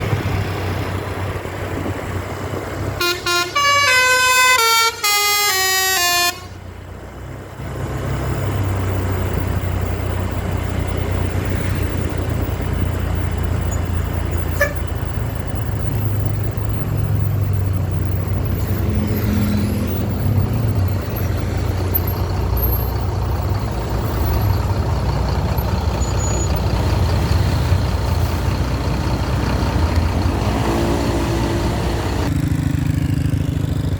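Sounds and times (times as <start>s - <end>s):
bus engine droning: 0.0s - 33.9s
bus horn playing descending notes: 3.0s - 6.6s.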